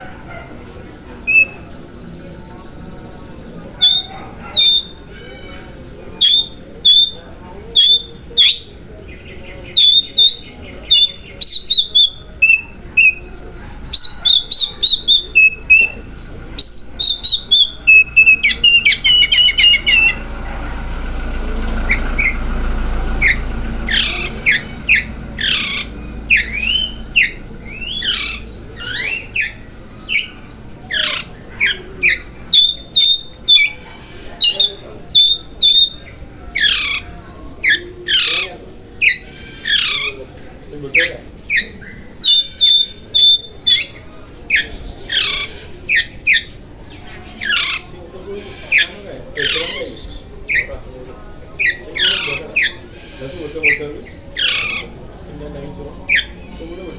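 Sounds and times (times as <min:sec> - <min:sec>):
bird whistled song: 0:01.1 - 0:02.2, 0:03.8 - 0:05.5, 0:06.2 - 0:20.4, 0:21.8 - 0:22.4, 0:23.2 - 0:40.2, 0:41.0 - 0:47.9, 0:48.8 - 0:50.9, 0:56.0 - 0:56.6.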